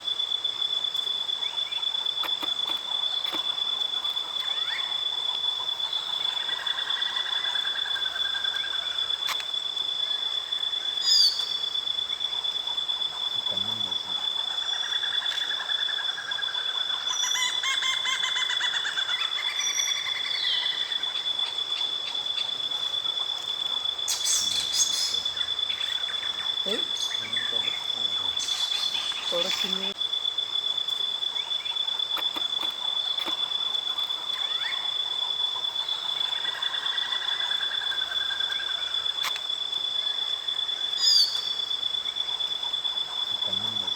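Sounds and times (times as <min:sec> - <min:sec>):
crickets trilling: 0:00.0 - 0:43.9
birds calling: 0:13.3 - 0:30.0, 0:31.3 - 0:39.4.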